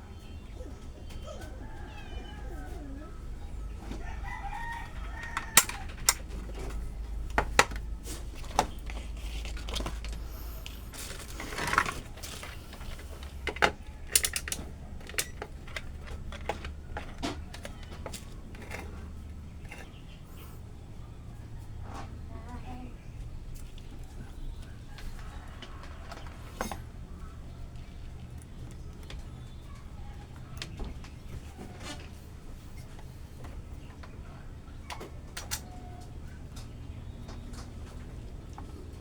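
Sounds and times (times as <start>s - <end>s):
sharp clicks and knocks: 5.2s - 20.0s.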